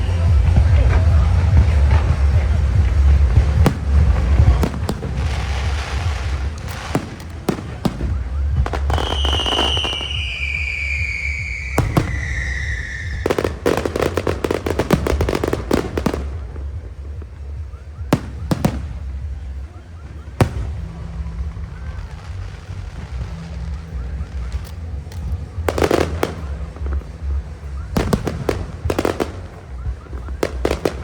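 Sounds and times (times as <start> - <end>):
fireworks bangs: 0.0 - 31.0
fireworks crackling: 0.0 - 31.0
descending firework whistle: 3.6 - 16.4.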